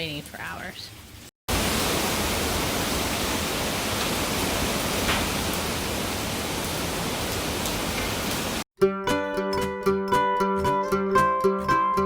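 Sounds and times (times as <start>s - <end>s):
heavy rain hiss: 1.5s - 8.6s.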